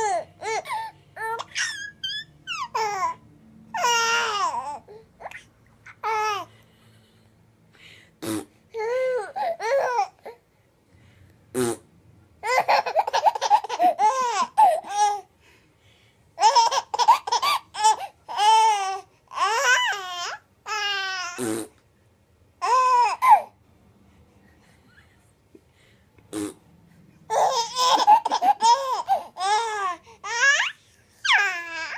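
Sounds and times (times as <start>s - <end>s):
baby laughing: 0.0s - 3.2s, 3.8s - 6.5s, 12.4s - 15.3s, 16.4s - 21.5s, 27.3s - 31.9s
baby squealing and babbling: 0.0s - 3.2s, 3.8s - 6.5s, 16.5s - 21.4s, 27.3s - 31.9s.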